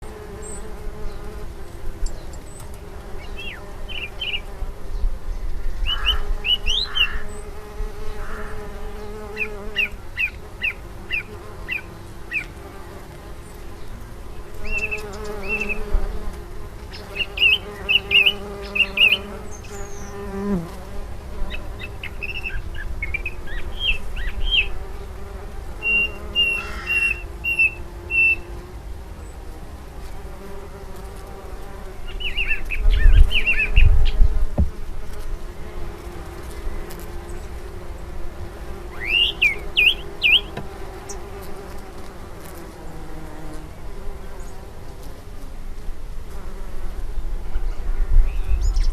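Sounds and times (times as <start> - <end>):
flying insects buzzing: 0.0 - 48.9
small bird chirping: 14.5 - 16.2, 16.9 - 20.6, 25.8 - 28.5, 32.1 - 34.4, 39.0 - 41.3.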